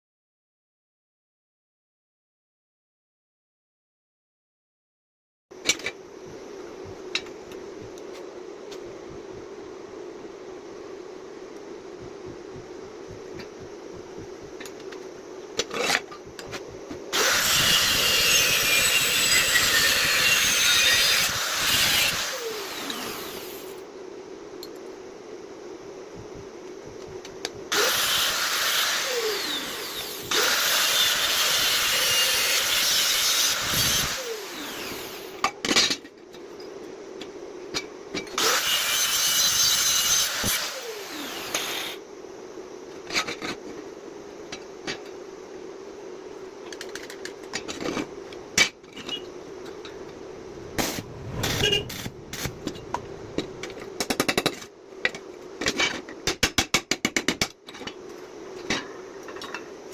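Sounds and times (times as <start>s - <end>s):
power tool hissing on iron: 17.1s - 23.8s, 27.7s - 35.4s, 38.4s - 42.0s
machine hum: 49.4s - 54.1s.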